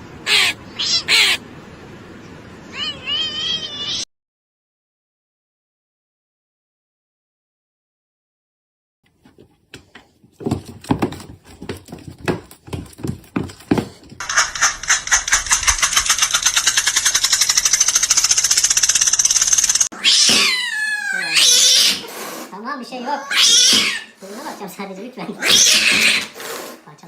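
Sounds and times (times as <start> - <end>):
cat meowing with a yowl: 0.2 - 1.4, 2.7 - 4.1, 19.9 - 22.1, 23.1 - 24.2, 25.4 - 26.4
fast rattling pulses: 14.2 - 19.9.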